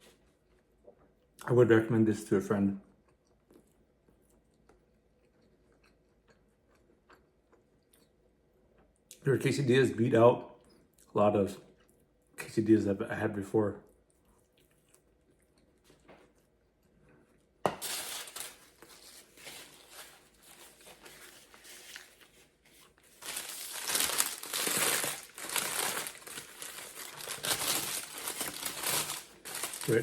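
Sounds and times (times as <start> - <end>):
wrapper crinkling and tearing: 17.8 - 30.0.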